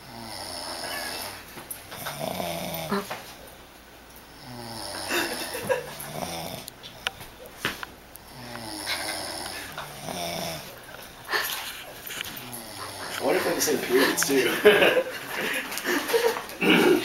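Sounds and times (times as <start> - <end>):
men snoring: 0.0 - 3.1, 4.3 - 6.7, 8.2 - 11.5, 12.2 - 17.0.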